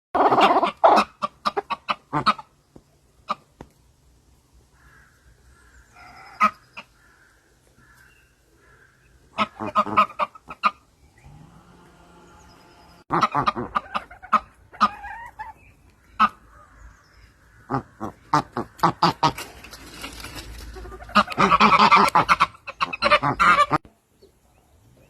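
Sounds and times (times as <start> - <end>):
chickens clucking and squawking: 0.2 - 2.6, 9.2 - 16.7, 17.4 - 23.9.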